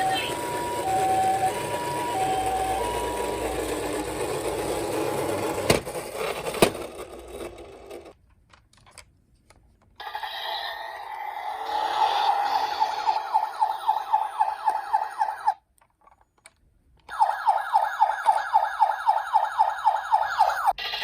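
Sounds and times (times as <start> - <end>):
toy two-tone siren: 0.0 - 4.8, 10.0 - 15.6, 17.1 - 21.0
mechanical rattling whirr: 0.0 - 8.2, 10.0 - 16.2.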